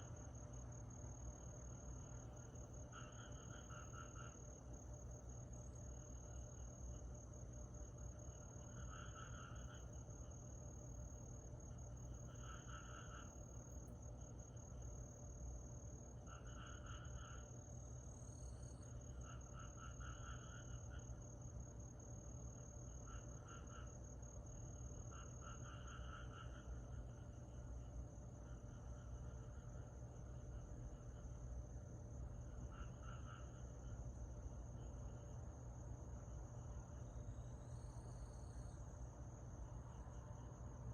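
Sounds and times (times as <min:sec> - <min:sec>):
high-pitched insect trill: 0:36.9 - 0:39.0.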